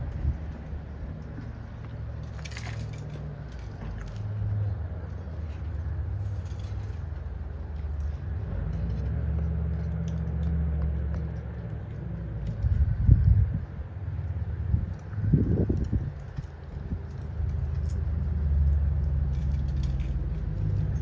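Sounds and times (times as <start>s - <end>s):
engine running steadily: 0.0s - 21.0s
metallic jingle: 17.5s - 18.6s.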